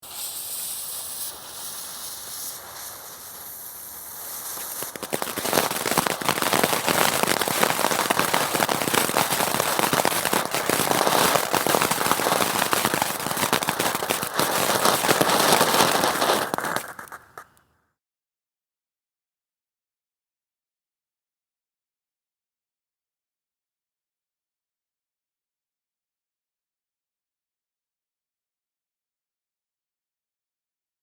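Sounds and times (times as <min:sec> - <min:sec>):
firework fountain crackling: 0:00.0 - 0:17.6.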